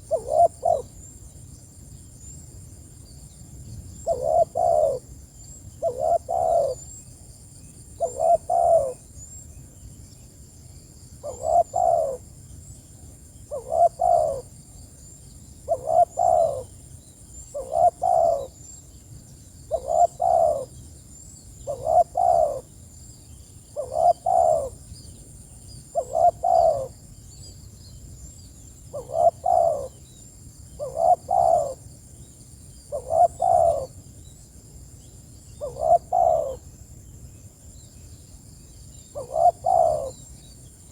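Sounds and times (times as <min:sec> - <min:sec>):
dove cooing: 0:00.1 - 0:01.0, 0:04.0 - 0:05.0, 0:05.8 - 0:06.9, 0:08.0 - 0:09.0, 0:11.2 - 0:12.2, 0:13.5 - 0:14.5, 0:15.7 - 0:16.7, 0:17.5 - 0:18.6, 0:19.7 - 0:20.7, 0:21.6 - 0:22.7, 0:23.8 - 0:24.8, 0:25.9 - 0:27.0, 0:28.9 - 0:30.0, 0:30.8 - 0:31.8, 0:32.9 - 0:33.9, 0:35.6 - 0:36.6, 0:39.2 - 0:40.2.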